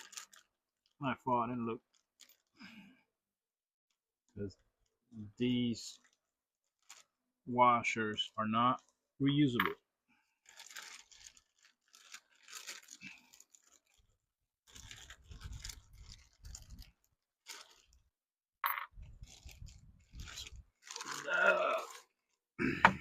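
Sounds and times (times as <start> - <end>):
hands crunching and rustling: 14.7 - 18.0.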